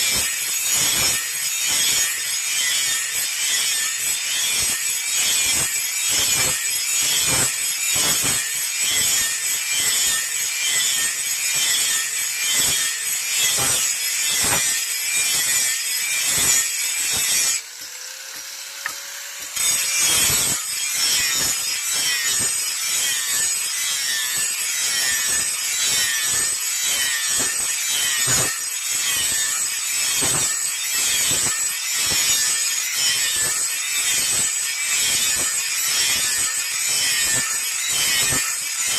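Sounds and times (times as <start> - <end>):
hand tool rasping on iron: 16.2 - 33.5.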